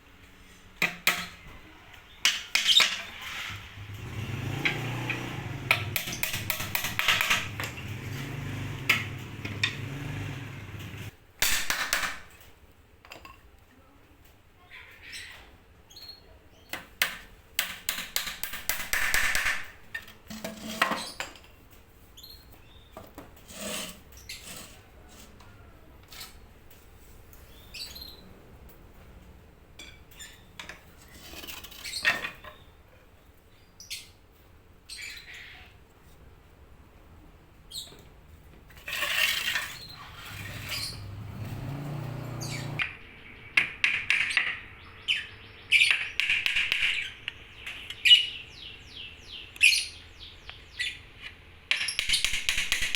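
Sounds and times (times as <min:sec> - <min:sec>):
birds chirping: 0:01.4 - 0:11.1, 0:27.3 - 0:28.4, 0:39.6 - 0:51.2.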